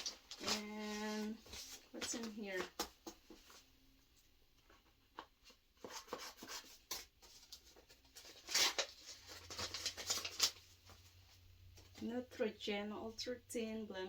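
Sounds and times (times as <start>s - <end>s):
packaging rustling and crinkling: 0.0s - 3.7s, 5.9s - 12.0s.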